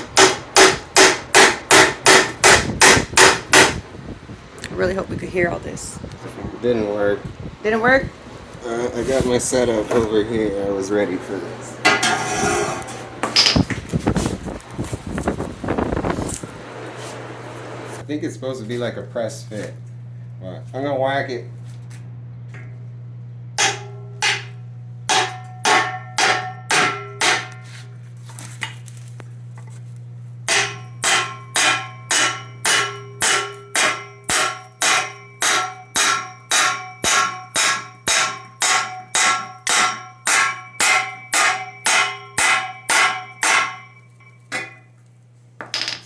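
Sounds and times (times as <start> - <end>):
hammer striking metal ringing: 0.0 - 3.8, 23.6 - 27.6, 30.5 - 44.9.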